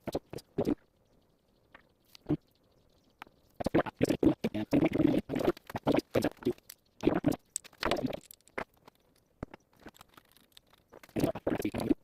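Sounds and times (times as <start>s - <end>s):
objects being handled: 5.1s - 11.9s.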